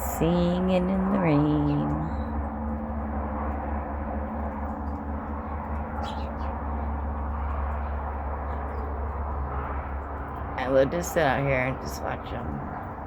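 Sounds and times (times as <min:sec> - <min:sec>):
low rumble and hiss: 0:00.0 - 0:13.0
small birds chirping: 0:01.2 - 0:02.5, 0:04.3 - 0:13.0.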